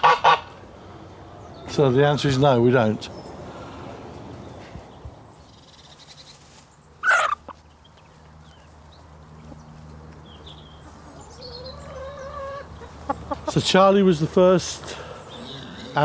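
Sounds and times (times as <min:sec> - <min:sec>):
goose honking: 0:00.0 - 0:00.6, 0:07.0 - 0:07.5.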